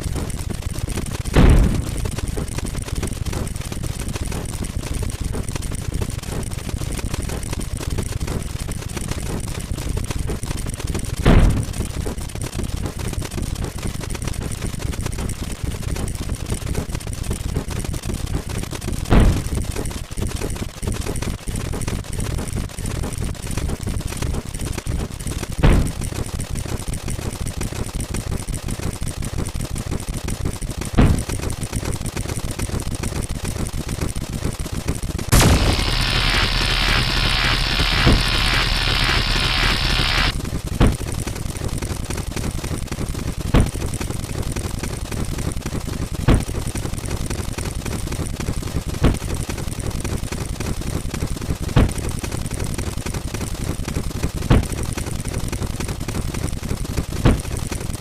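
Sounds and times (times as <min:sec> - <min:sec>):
loud thuds: 0:01.4 - 0:02.1, 0:11.2 - 0:11.8, 0:19.1 - 0:19.6, 0:25.6 - 0:26.1, 0:35.3 - 0:40.3.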